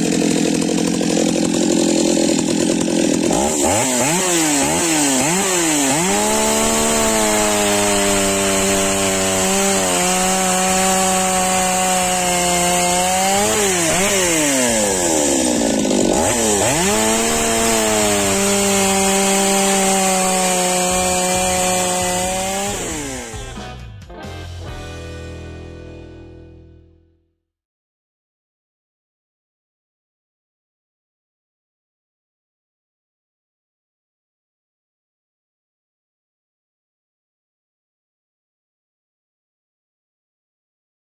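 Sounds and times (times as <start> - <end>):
chainsaw cutting wood: 0.0 - 23.8.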